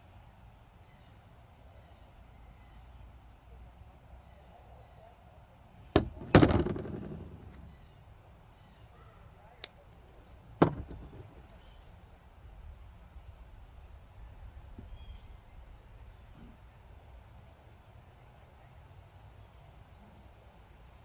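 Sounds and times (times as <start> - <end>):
hard objects knocking: 6.0 - 7.7, 10.6 - 11.5.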